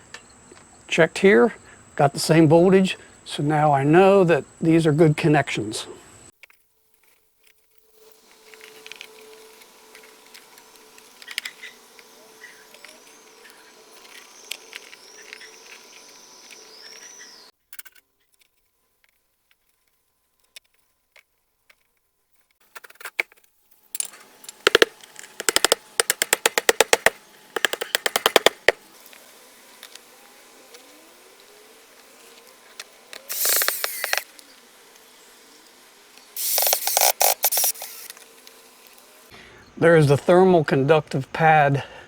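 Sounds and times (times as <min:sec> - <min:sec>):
rapid sharp tool clicks: 0:24.5 - 0:28.8, 0:33.2 - 0:34.3, 0:36.4 - 0:38.2.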